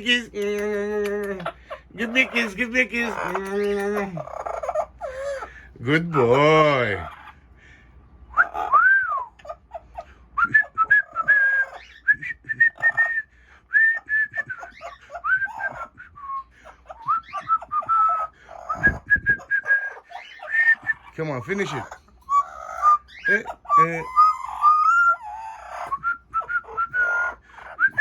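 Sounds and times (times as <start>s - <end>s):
parrot whistling and chirping: 8.3s - 28.0s.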